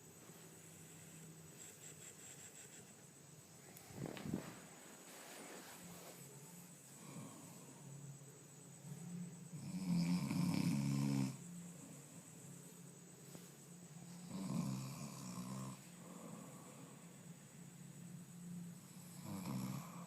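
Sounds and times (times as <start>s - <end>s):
quiet breathing: 0.0s - 20.0s
person snoring loudly: 9.6s - 11.4s, 14.2s - 16.5s, 18.9s - 20.0s.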